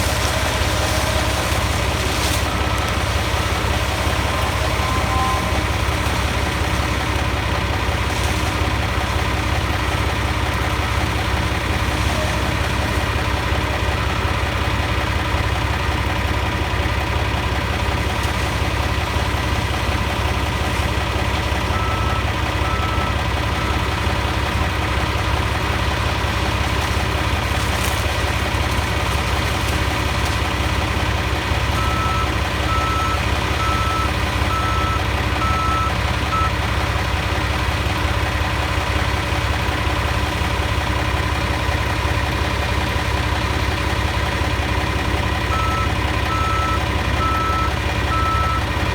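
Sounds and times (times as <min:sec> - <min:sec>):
diesel engine running under load: 0:00.0 - 0:48.9
backup alarm beeping: 0:00.3 - 0:07.7, 0:21.5 - 0:24.0, 0:31.6 - 0:36.6, 0:45.5 - 0:48.7.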